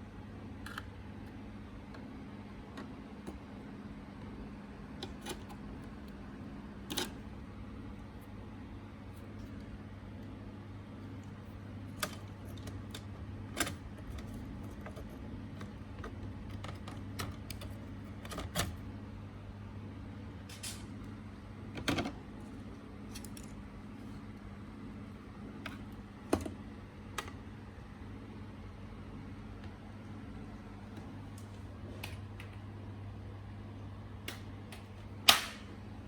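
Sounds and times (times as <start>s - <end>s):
steady low hum: 0.0s - 36.0s
laptop parts clicking and clattering: 11.8s - 18.8s.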